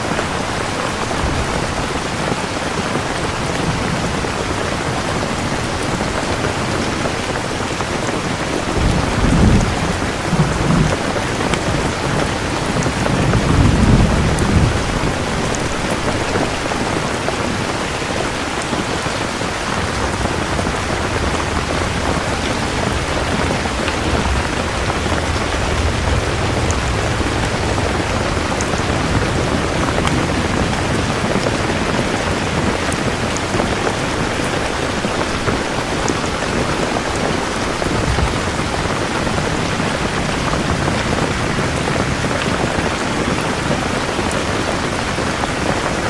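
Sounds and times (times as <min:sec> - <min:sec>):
steady rain: 0:00.0 - 0:46.0
thunder rumbling: 0:00.0 - 0:46.0.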